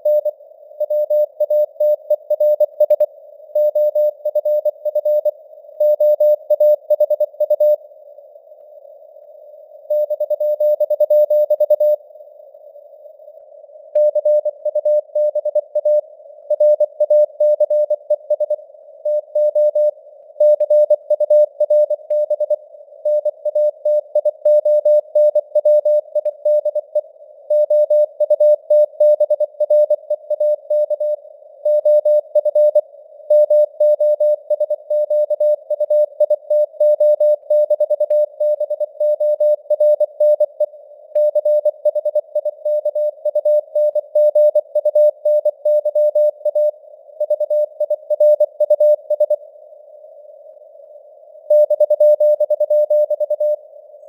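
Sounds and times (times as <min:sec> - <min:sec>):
faint radio hiss: 0:00.0 - 0:00.9, 0:03.0 - 0:03.6, 0:04.7 - 0:06.5, 0:07.7 - 0:09.9, 0:11.3 - 0:14.0, 0:16.0 - 0:16.5, 0:17.8 - 0:19.0, 0:19.9 - 0:20.4, 0:22.6 - 0:23.0, 0:26.8 - 0:27.5, 0:40.4 - 0:41.1, 0:46.6 - 0:54.0.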